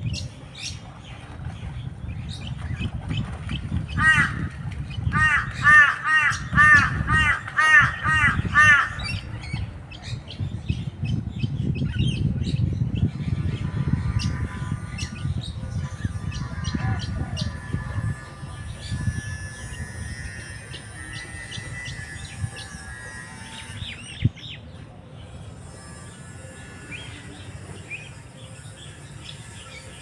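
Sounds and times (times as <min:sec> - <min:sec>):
crow cawing: 0:05.1 - 0:09.0.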